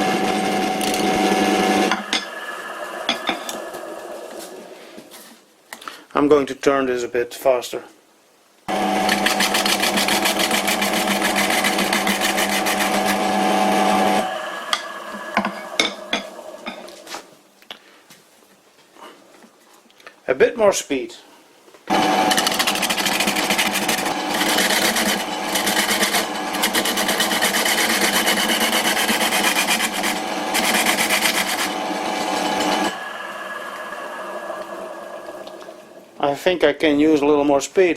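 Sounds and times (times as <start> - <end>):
gouge scraping spinning wood: 0.0 - 5.1, 8.7 - 17.1, 21.9 - 36.2
lathe humming: 0.0 - 5.1, 8.7 - 17.1, 21.9 - 36.3.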